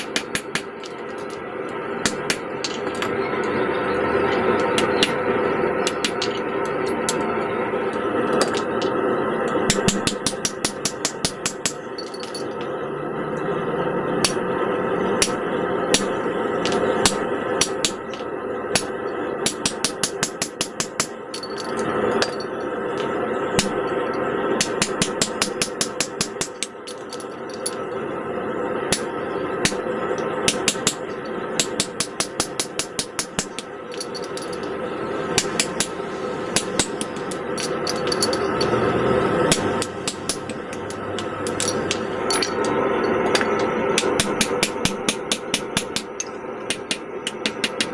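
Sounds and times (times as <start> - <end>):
hammer striking hot steel on anvil: 0.0 - 0.9, 2.0 - 3.1, 4.6 - 5.2, 5.8 - 7.3, 9.5 - 12.3, 14.2 - 14.4, 15.2 - 21.6, 23.6 - 23.9, 24.6 - 26.8, 28.9 - 29.8, 30.4 - 34.5, 35.4 - 38.7, 39.5 - 47.9
steady background noise: 0.0 - 47.9.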